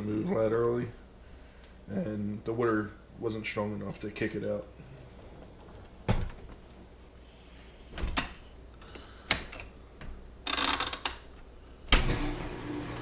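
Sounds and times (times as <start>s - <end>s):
dishwasher low hum: 4.8s - 7.0s, 11.4s - 13.0s.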